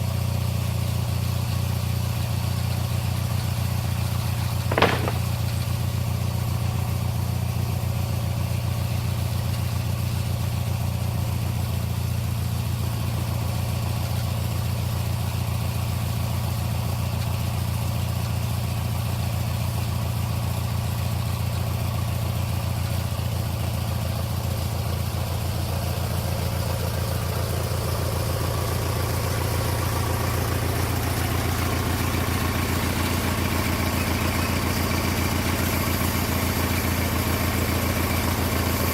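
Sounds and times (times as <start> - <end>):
small engine running: 4.7 - 5.6.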